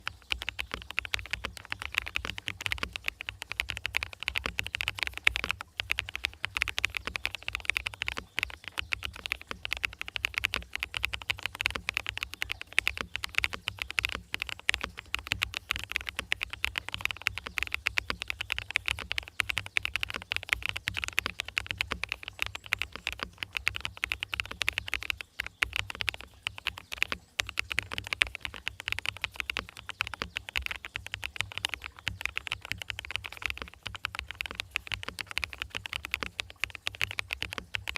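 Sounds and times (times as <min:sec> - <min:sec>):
fast mechanical keyboard typing: 0:00.0 - 0:37.9.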